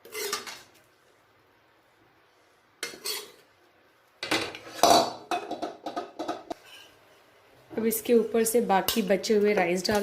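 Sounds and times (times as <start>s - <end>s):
metal spoon scraping a pot: 0.0s - 0.7s, 2.8s - 3.5s, 6.5s - 7.0s.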